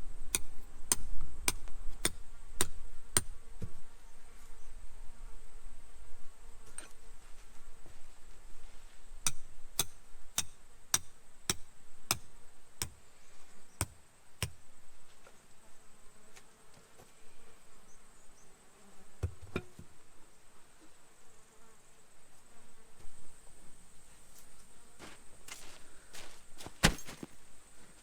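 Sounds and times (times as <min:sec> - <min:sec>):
tent peg being hammered: 0:00.3 - 0:03.3, 0:09.3 - 0:13.0.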